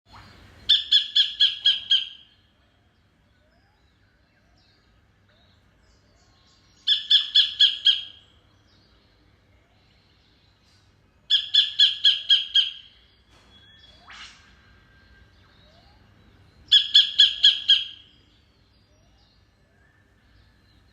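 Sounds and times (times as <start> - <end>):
other birds chirping: 0.1 - 20.9
kingfisher harsh repeated calls: 0.7 - 2.3, 16.7 - 18.1.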